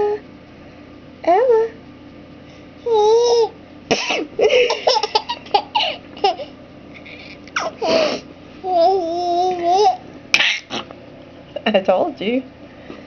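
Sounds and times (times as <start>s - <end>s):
baby laughing: 4.5s - 8.1s.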